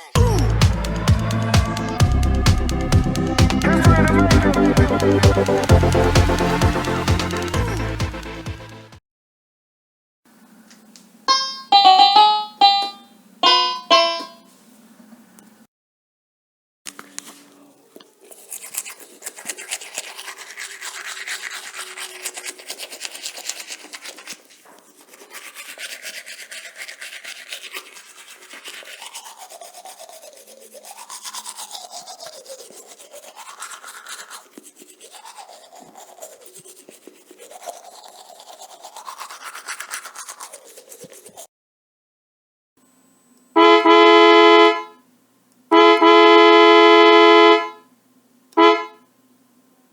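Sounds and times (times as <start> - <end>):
rapid scrubbing strokes: 0.0 - 9.0, 18.2 - 41.5
hollow rising and falling pitch: 0.2 - 8.9.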